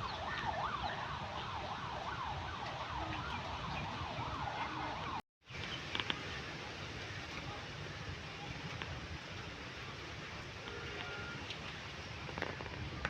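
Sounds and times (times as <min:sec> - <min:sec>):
siren yelping: 0:00.0 - 0:05.2
background noise: 0:00.0 - 0:13.0.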